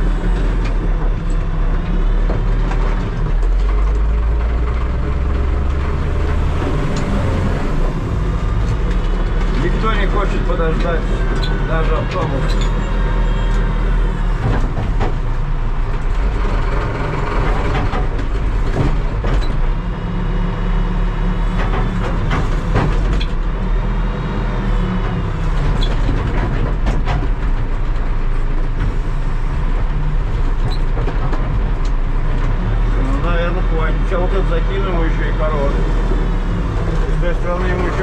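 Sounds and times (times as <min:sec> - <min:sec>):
knocks and clanks: 0:00.0 - 0:19.9, 0:21.4 - 0:23.8, 0:25.0 - 0:33.0
backhoe diesel engine revving: 0:00.0 - 0:38.0.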